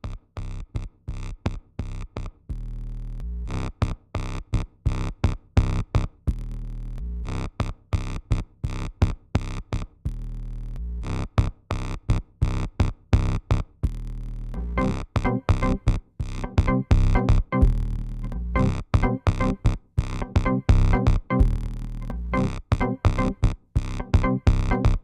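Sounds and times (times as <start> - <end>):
synthesizer bass notes: 13.9 - 25.0
drum machine beat: 14.6 - 25.0.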